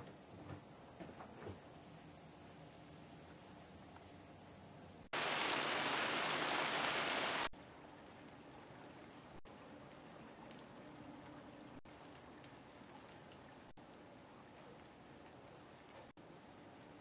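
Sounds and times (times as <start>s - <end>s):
rain falling: 5.1s - 17.0s.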